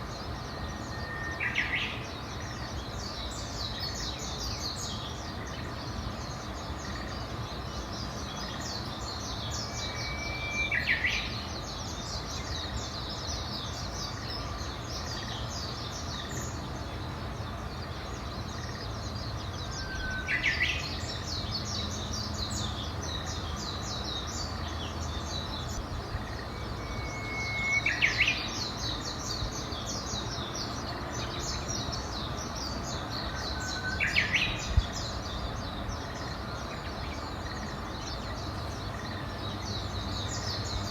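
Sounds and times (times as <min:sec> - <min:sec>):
small birds twittering: 0:00.0 - 0:40.9
songbird whistling phrase: 0:09.6 - 0:11.3, 0:26.6 - 0:28.6.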